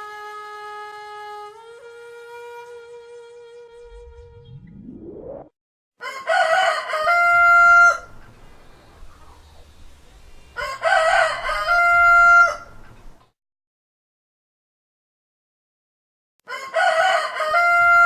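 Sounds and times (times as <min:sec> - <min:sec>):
short rising sweep: 0:03.6 - 0:05.6
rooster crowing: 0:06.0 - 0:08.2, 0:10.6 - 0:12.8, 0:16.5 - 0:18.0.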